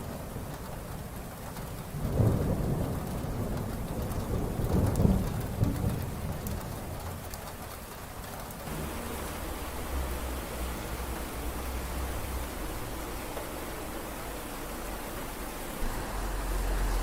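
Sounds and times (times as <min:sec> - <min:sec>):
heavy rain: 0:00.0 - 0:17.0
low rolling thunder: 0:00.1 - 0:07.9.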